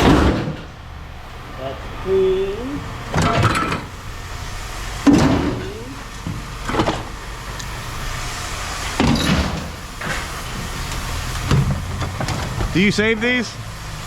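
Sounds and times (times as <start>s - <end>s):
low steady hum: 0.0s - 14.0s
scrap metal knocks and clanks: 3.1s - 7.2s, 8.8s - 13.1s.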